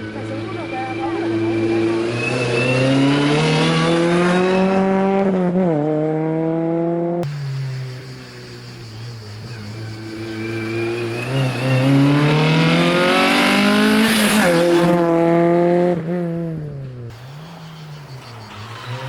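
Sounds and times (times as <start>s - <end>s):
race car engine accelerating: 0.0s - 19.0s.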